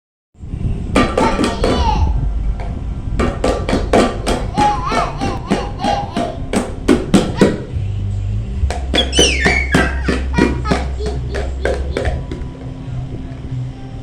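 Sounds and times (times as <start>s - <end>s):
music with fast percussive beat: 2.6s - 8.0s, 8.6s - 13.0s.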